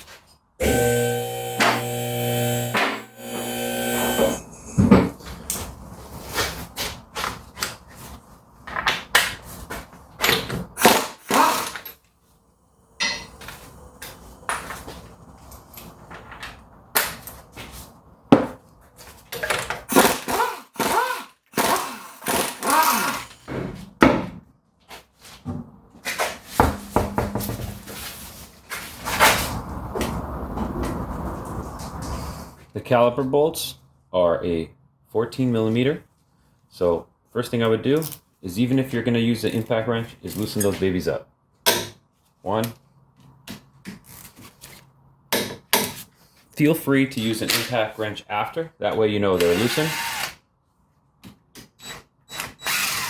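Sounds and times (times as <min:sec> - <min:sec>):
power tool bursts: 0:00.6 - 0:04.5, 0:10.8 - 0:11.8, 0:19.9 - 0:23.4, 0:49.4 - 0:50.4, 0:51.8 - 0:53.0
metallic clanks and knocks: 0:26.6 - 0:27.9.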